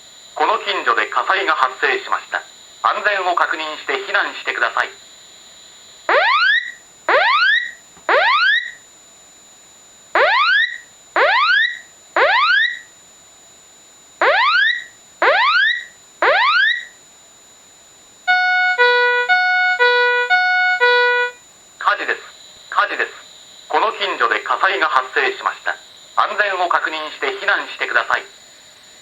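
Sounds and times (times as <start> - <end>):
fire alarm electronic whoop: 6.1 - 8.9, 10.2 - 12.9, 14.2 - 17.0, 18.3 - 21.4
electronic chime notes: 18.3 - 21.4.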